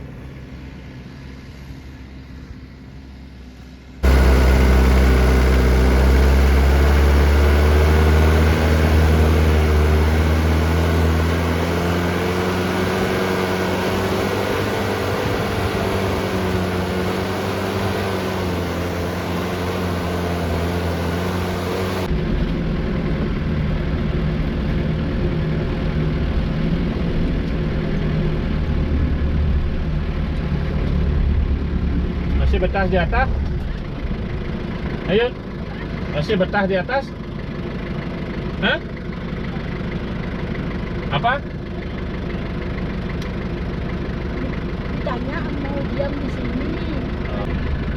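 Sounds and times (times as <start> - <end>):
car engine running at low revs: 0.0 - 47.9.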